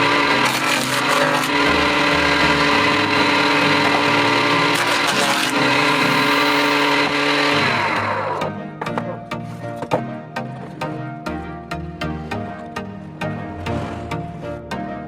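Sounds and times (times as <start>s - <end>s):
power tool running and winding down: 0.0s - 8.4s.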